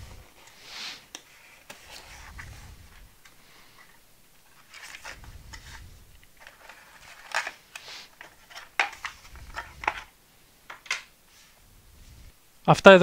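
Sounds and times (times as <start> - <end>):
packaging rustling and scraping: 0.1 - 10.2.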